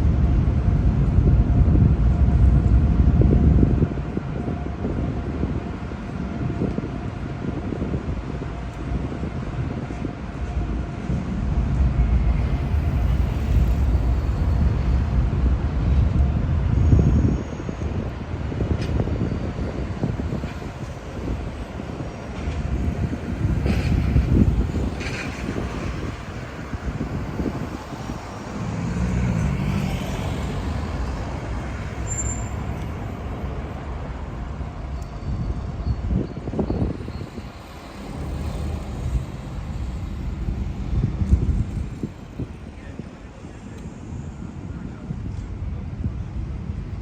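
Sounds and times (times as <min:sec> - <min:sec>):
low engine rumble: 0:00.0 - 0:19.1
wind buffeting microphone: 0:00.0 - 0:47.0.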